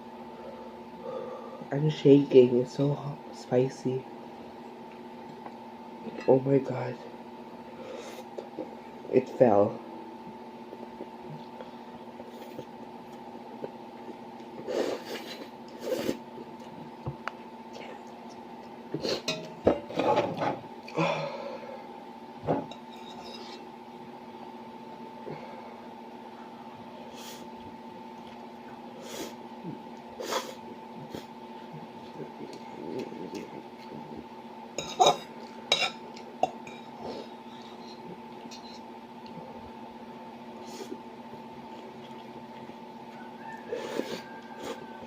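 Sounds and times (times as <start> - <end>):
low electrical hum: 0.0 - 45.0
person sniffing: 14.6 - 16.2, 29.0 - 29.4, 30.2 - 31.3.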